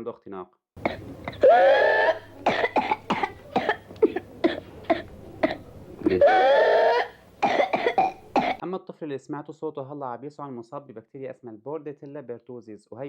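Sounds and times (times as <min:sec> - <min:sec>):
child coughing: 0:00.8 - 0:08.6.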